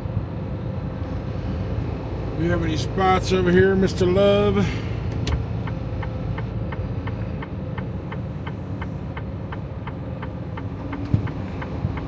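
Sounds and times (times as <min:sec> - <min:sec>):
diesel engine rumble: 0:00.0 - 0:12.0
turn signal ticking: 0:05.1 - 0:12.0.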